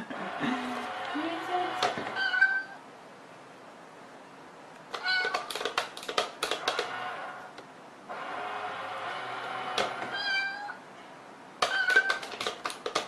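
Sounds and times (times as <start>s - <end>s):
pet animal crying: 2.1s - 2.8s, 4.9s - 5.5s, 10.1s - 10.8s, 11.6s - 12.3s
sharp clicks: 4.8s - 7.0s, 11.6s - 13.0s.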